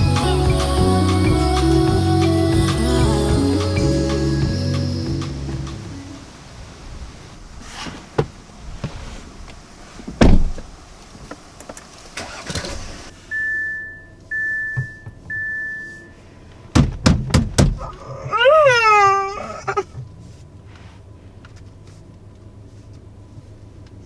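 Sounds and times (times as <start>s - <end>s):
electronic beeps: 13.3s - 16.2s
sharp knocks: 16.7s - 18.0s
dull thumps: 16.7s - 18.4s.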